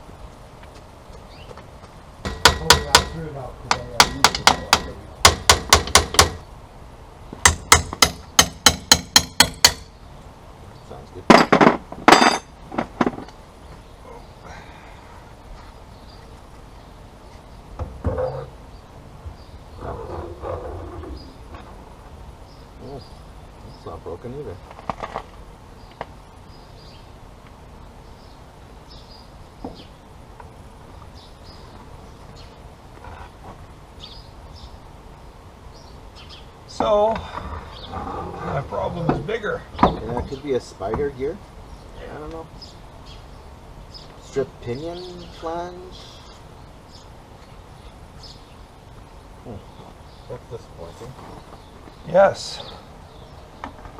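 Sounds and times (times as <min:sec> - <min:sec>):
low outdoor background: 0:00.0 - 0:53.9
hammer striking metal: 0:02.2 - 0:03.2, 0:04.0 - 0:06.4, 0:07.5 - 0:09.9.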